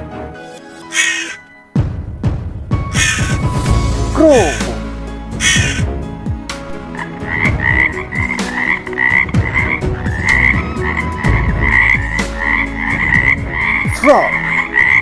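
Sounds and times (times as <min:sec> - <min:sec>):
frogs croaking: 0:00.9 - 0:01.4, 0:03.0 - 0:03.4, 0:04.5 - 0:06.0, 0:06.7 - 0:15.0
lower frog croaks: 0:00.9 - 0:01.4, 0:03.0 - 0:03.4, 0:05.4 - 0:05.9, 0:06.9 - 0:15.0.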